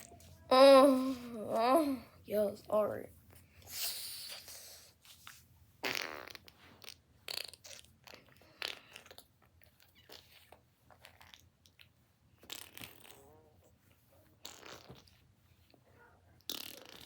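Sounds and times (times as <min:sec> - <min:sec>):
person snoring: 0:00.5 - 0:02.0.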